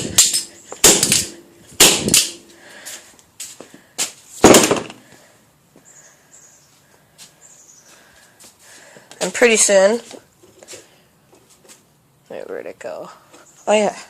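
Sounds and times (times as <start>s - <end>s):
padlock banging on ground: 0.0s - 2.6s, 4.4s - 5.0s.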